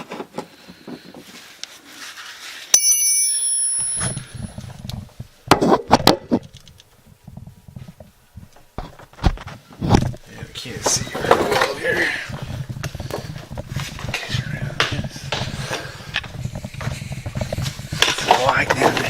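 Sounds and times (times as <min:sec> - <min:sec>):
metal tool clanging on metal: 0:02.8 - 0:04.4.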